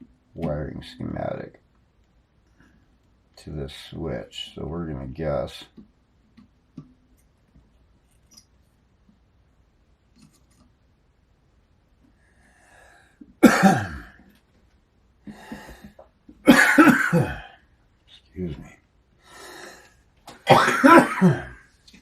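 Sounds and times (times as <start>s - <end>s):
intake of breath: 12.2s - 13.2s, 15.3s - 16.0s, 19.2s - 20.1s
man coughing: 13.4s - 14.2s, 16.4s - 17.6s, 20.4s - 21.6s.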